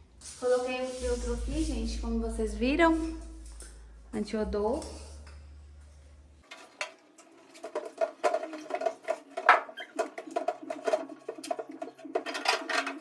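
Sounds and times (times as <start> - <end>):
steady low tone: 1.0 - 6.4.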